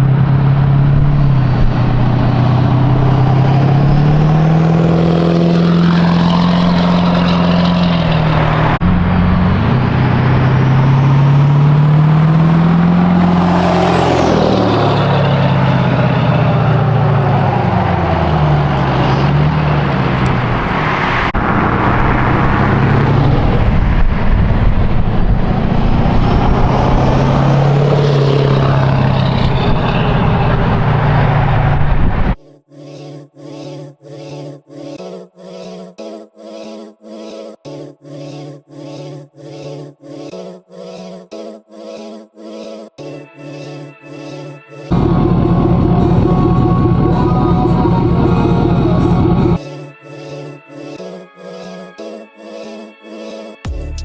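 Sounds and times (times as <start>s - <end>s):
diesel engine revving: 0.0s - 32.4s, 44.9s - 49.6s.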